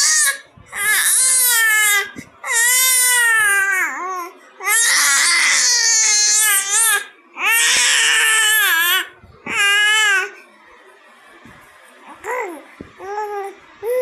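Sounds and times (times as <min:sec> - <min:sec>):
baby crying: 0:00.0 - 0:10.4.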